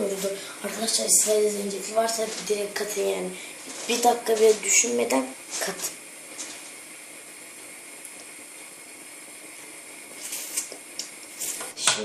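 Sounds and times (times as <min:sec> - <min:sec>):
milk heating hiss: 0:00.0 - 0:11.8.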